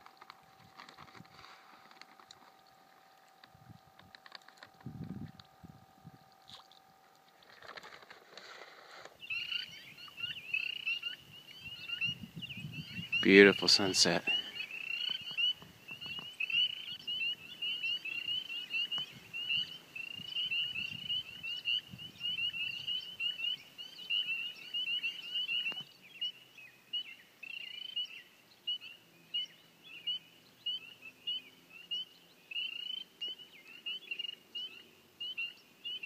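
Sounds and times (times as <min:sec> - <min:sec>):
animals chirping: 0:09.2 - 0:26.3.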